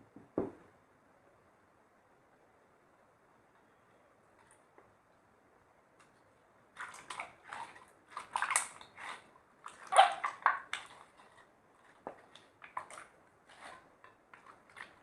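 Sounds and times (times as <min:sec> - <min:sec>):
slime squelching: 0:06.7 - 0:15.0.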